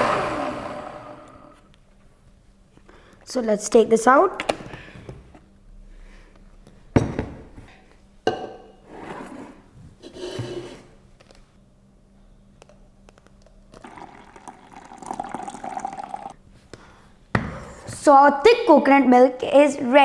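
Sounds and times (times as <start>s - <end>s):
thick liquid pouring: 13.8s - 16.4s.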